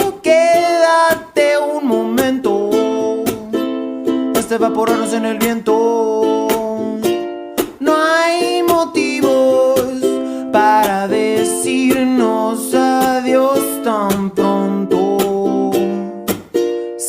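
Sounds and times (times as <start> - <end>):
ukulele song: 0.0 - 17.0.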